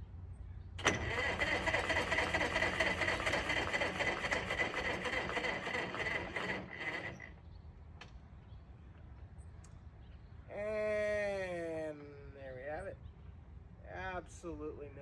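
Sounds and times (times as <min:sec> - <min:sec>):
starter click: 0:00.8 - 0:07.3
electric starter cranking motor: 0:00.8 - 0:07.4.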